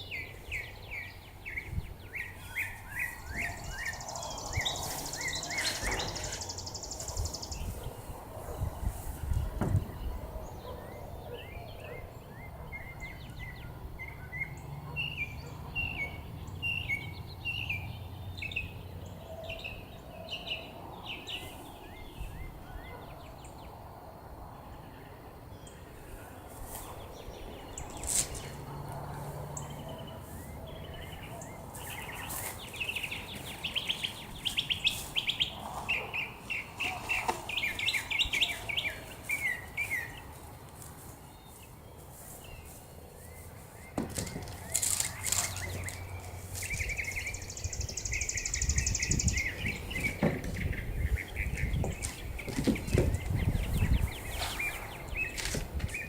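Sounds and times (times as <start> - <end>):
wind rumble on microphone: 0.0 - 11.3, 44.2 - 56.0
songbirds chirping: 0.0 - 56.0.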